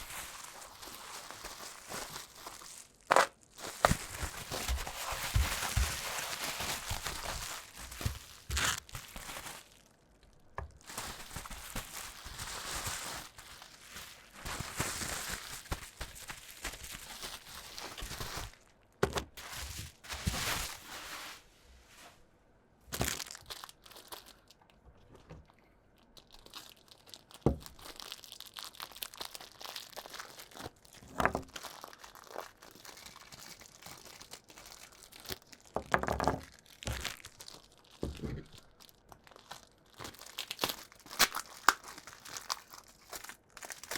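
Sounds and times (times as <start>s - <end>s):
packaging crinkling and tearing: 0.0s - 21.4s, 22.9s - 24.7s, 26.0s - 43.9s.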